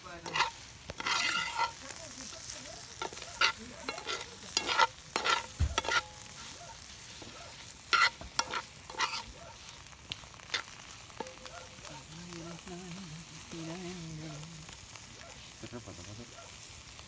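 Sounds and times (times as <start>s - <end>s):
shrimp sizzling in a pan: 0.0s - 17.0s
utensil clattering against pan: 0.2s - 9.4s, 10.5s - 12.0s.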